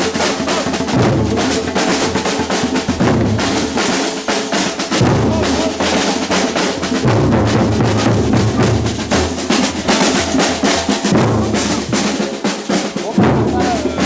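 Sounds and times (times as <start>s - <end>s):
samba percussion ensemble: 0.0s - 14.0s
deep bass drums: 0.8s - 3.9s, 4.9s - 12.3s.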